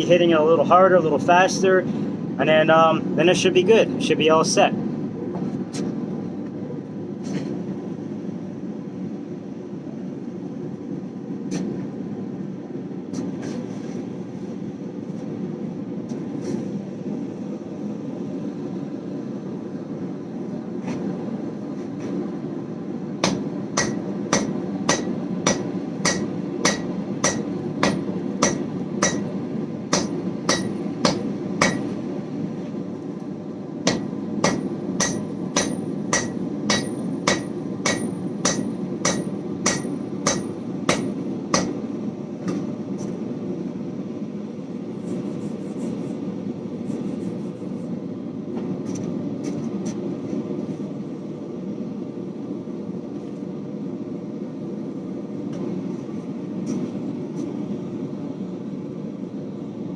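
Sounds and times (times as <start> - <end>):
hammer striking metal on anvil: 23.2 - 29.3, 29.9 - 31.9, 33.8 - 41.8.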